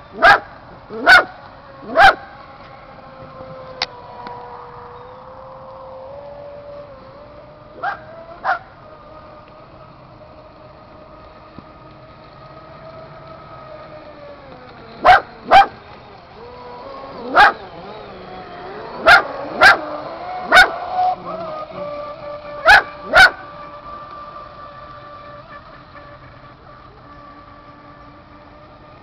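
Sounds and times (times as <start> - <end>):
boat motor whine: 0.0 - 29.0
dog barking: 7.8 - 8.6, 17.4 - 17.6, 19.1 - 19.8, 20.5 - 20.7, 22.6 - 23.4.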